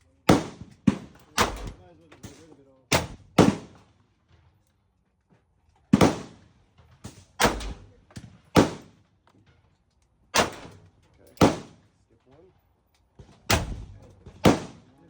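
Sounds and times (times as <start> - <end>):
revolver gunshots with echo: 0.2 - 3.8, 6.0 - 9.0, 10.4 - 10.8, 11.4 - 11.8, 13.5 - 15.0.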